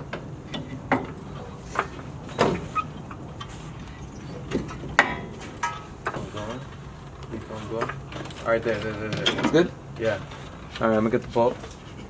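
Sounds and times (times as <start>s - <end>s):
metal tools clinking: 4.2s - 6.8s.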